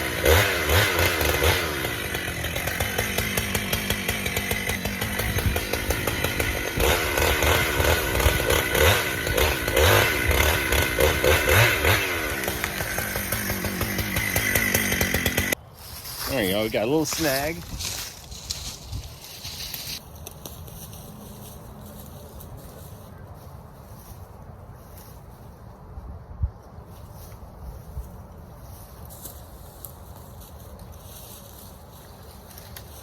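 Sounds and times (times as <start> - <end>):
chainsaw cutting wood: 0.0 - 15.6.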